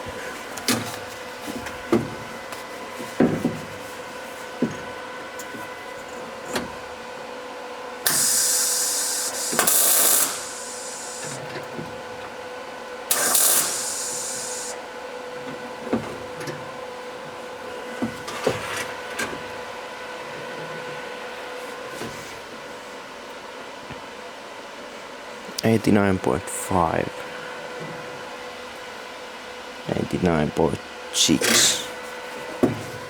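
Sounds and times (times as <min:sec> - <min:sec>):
faint steady hum: 0:08.1 - 0:11.4, 0:13.1 - 0:14.8
hissing spray bursts: 0:08.1 - 0:11.4, 0:13.1 - 0:14.8.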